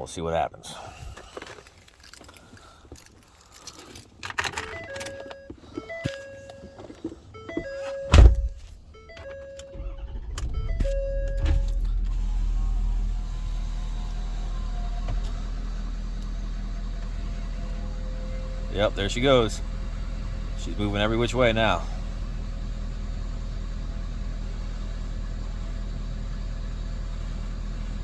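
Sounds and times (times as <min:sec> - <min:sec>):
diesel engine starting and idling: 0:01.0 - 0:28.0
electronic warning chimes: 0:04.6 - 0:11.9
heavy thud: 0:08.1 - 0:08.7.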